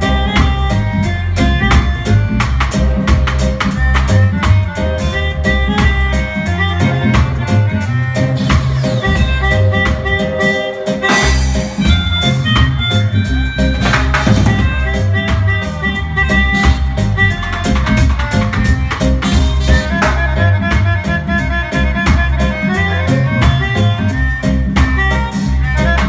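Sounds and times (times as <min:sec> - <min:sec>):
bass: 0:00.0 - 0:26.0
drum kit beat: 0:00.0 - 0:26.0
guitar: 0:00.0 - 0:26.0.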